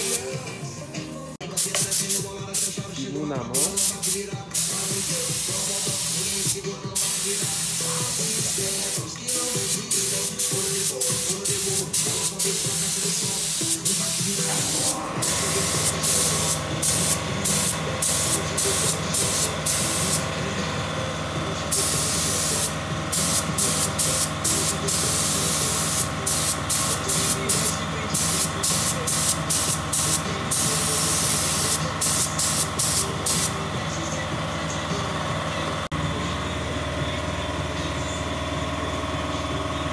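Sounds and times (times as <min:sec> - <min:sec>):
paint spray gun hissing: 0:00.0 - 0:00.4, 0:01.5 - 0:02.9, 0:03.6 - 0:20.6, 0:21.6 - 0:33.6.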